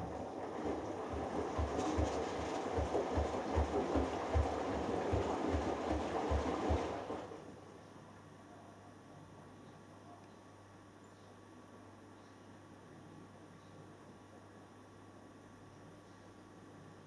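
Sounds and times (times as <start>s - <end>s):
water and laundry sloshing: 0.0s - 7.5s.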